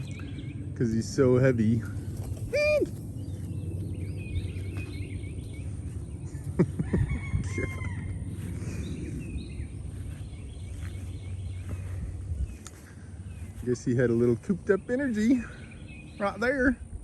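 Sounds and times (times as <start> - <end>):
low rumble: 0.0 - 13.6
birds chirping and calling: 0.0 - 17.0.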